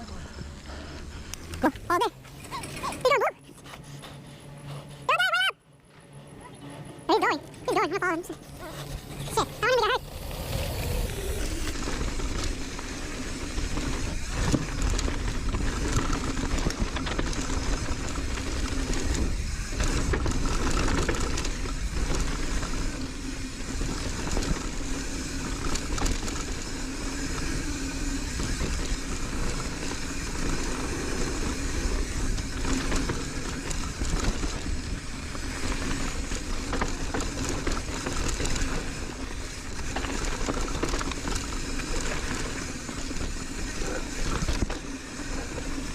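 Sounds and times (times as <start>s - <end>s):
tyres rolling over dirt: 6.8s - 45.9s.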